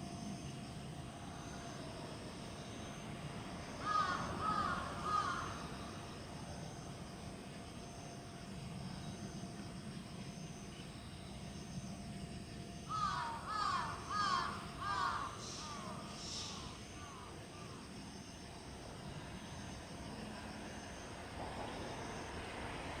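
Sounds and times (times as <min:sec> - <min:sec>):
faint steady background hum: 0:00.0 - 0:23.0
crow cawing: 0:03.8 - 0:05.8, 0:12.9 - 0:17.2.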